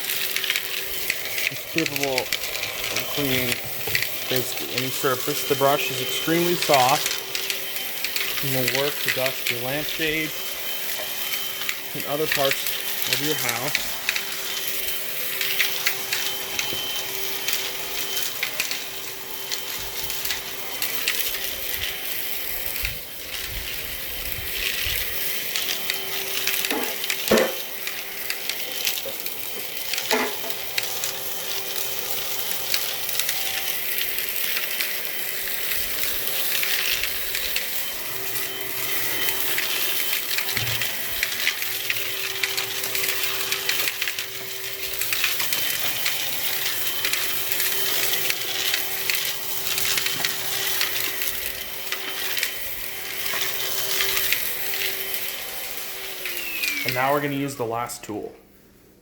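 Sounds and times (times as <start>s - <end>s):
vacuum cleaner motor humming: 0.0s - 59.0s
brush bristles scratching surfaces: 8.1s - 10.4s.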